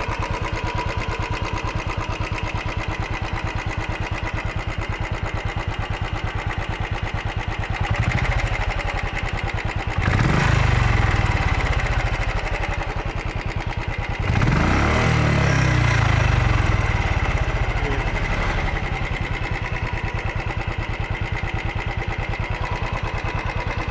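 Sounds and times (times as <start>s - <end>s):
motorcycle engine idling and revving: 0.0s - 23.9s.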